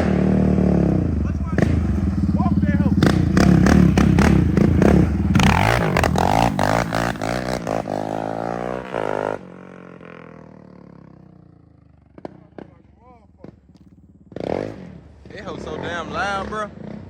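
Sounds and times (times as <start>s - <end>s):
atv engine revving: 0.0s - 17.0s
exhaust crackling pops: 12.0s - 15.6s.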